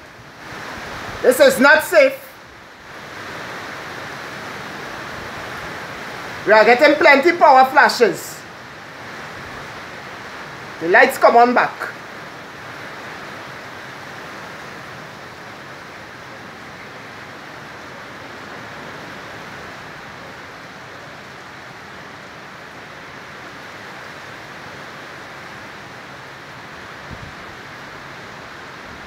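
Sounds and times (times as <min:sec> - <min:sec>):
rain: 0:00.0 - 0:29.0
strong wind rushing: 0:26.9 - 0:29.0.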